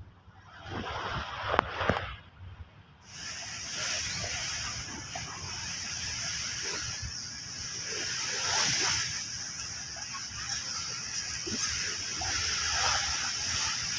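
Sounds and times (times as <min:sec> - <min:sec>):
water sloshing and splashing: 0:00.3 - 0:13.9
rushing water hiss: 0:03.0 - 0:13.9.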